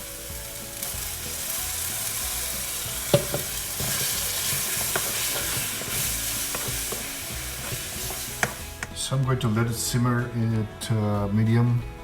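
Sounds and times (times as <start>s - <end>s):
paste sizzling in oil: 0.0s - 9.0s
spoon stirring and scraping: 2.9s - 9.0s
spoon knocking against pan: 3.1s - 8.9s.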